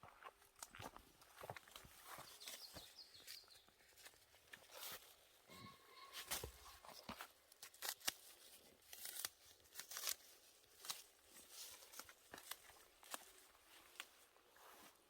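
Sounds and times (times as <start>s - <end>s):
dried leaves crackling and rustling: 2.1s - 14.9s.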